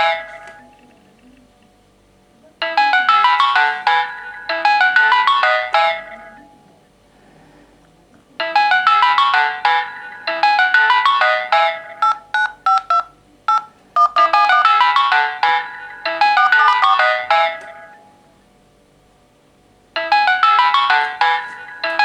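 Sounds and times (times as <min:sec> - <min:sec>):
smartphone ringtones: 0:00.0 - 0:00.7, 0:02.6 - 0:06.6, 0:08.4 - 0:18.3, 0:20.0 - 0:22.0
repeated beeps on one pitch: 0:11.8 - 0:14.9.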